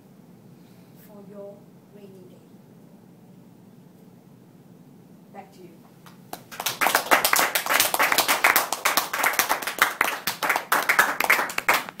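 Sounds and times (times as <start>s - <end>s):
audience applauding: 6.1s - 12.0s.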